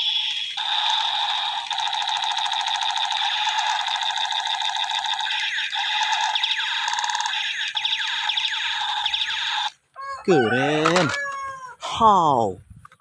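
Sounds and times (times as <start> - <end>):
fast electronic rattling burst: 0.0 - 9.7
toy gun pew sweeps: 0.0 - 9.7
toy gun buzzy tone: 0.0 - 9.8.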